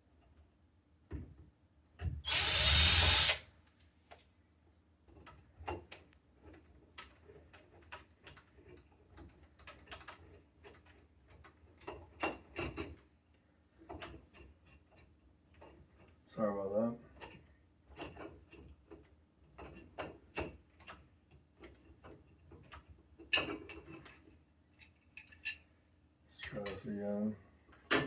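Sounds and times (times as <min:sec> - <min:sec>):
power drill running: 0:02.2 - 0:03.4.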